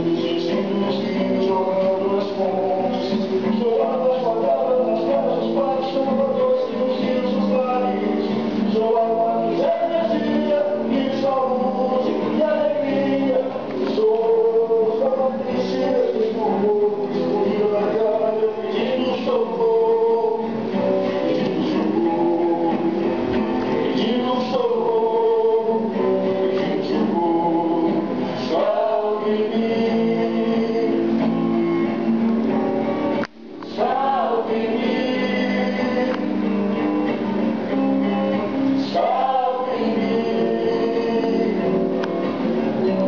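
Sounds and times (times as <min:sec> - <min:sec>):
man singing: 0:00.0 - 0:31.3, 0:33.7 - 0:36.8, 0:38.0 - 0:43.0
plucked guitar: 0:00.0 - 0:43.0
choir singing: 0:23.8 - 0:31.0, 0:33.7 - 0:36.3, 0:38.8 - 0:41.7.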